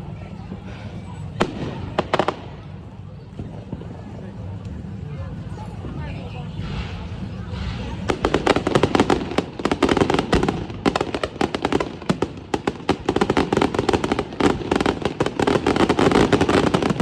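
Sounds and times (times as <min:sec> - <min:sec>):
fireworks cracking and popping: 0:01.3 - 0:04.3, 0:06.8 - 0:17.0.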